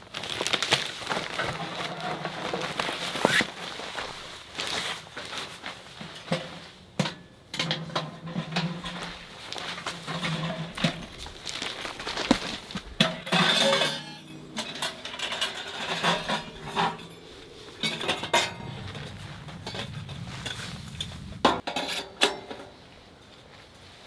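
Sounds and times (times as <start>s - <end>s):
clinks and clatter of hard objects: 0.0s - 3.4s, 6.0s - 18.8s.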